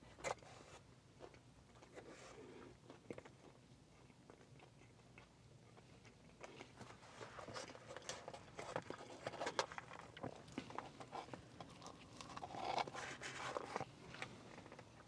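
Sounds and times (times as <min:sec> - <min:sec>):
person biting and chewing food: 0:07.7 - 0:15.0.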